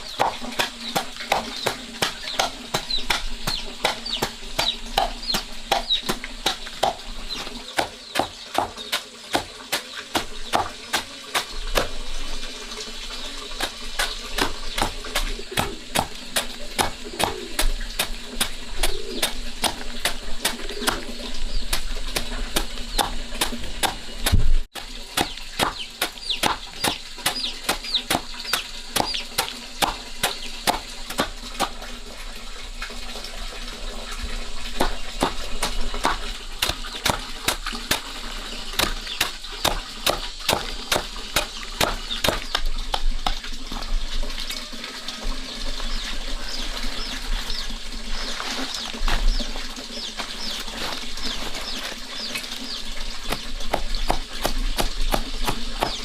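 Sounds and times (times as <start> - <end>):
chicks peeping: 0.0 - 11.2, 25.2 - 30.8, 44.6 - 56.0.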